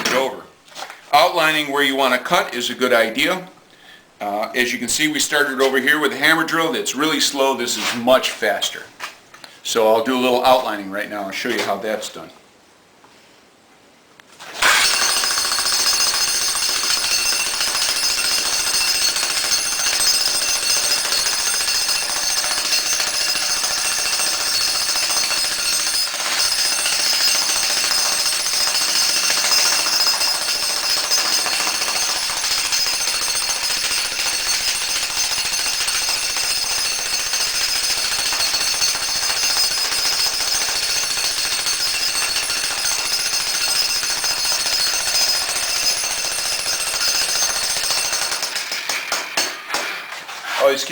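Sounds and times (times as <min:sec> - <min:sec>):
jackhammer hammering concrete: 0:14.6 - 0:49.6.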